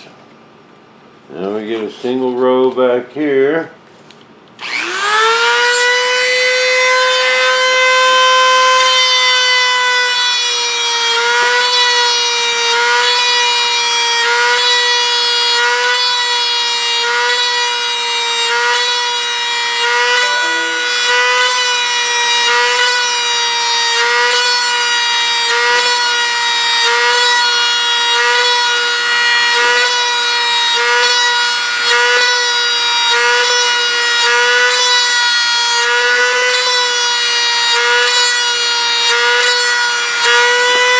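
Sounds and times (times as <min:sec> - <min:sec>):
rotary tool high-pitched whine: 0:04.6 - 0:13.4, 0:17.1 - 0:28.9.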